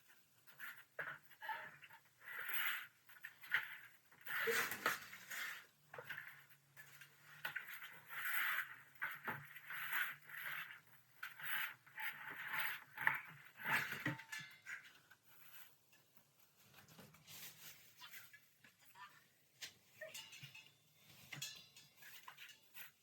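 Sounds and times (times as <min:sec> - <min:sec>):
cardboard rustling and scraping: 0:02.4 - 0:15.8, 0:16.5 - 0:18.4.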